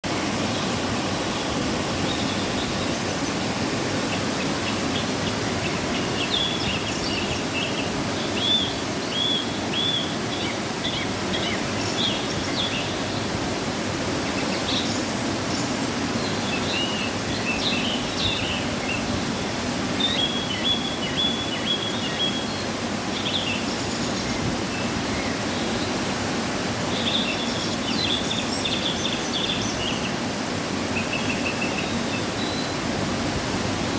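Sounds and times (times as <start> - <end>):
waterfall rushing: 0.0 - 33.9.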